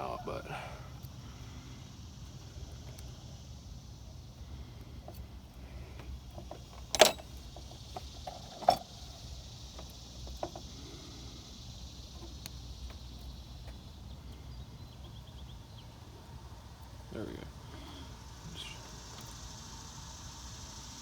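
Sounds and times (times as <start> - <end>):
low steady hum: 0.0 - 21.0
metal pick tools clicking and scraping: 6.0 - 10.7.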